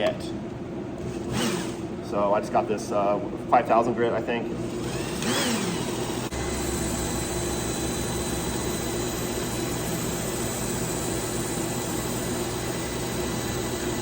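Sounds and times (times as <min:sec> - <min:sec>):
motor hum: 0:00.7 - 0:02.4, 0:04.4 - 0:14.0.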